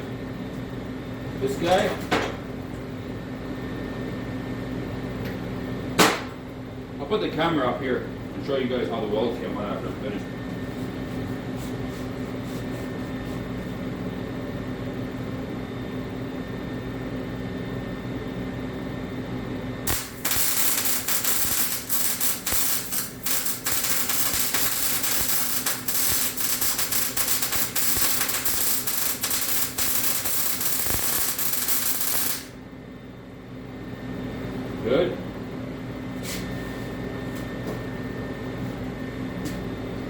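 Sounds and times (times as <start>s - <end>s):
steady hum: 0.0s - 40.0s
welder arc crackling: 19.9s - 32.6s.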